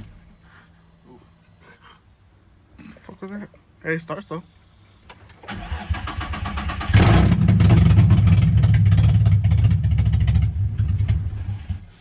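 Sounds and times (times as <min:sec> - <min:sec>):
car engine running: 0:06.9 - 0:11.8.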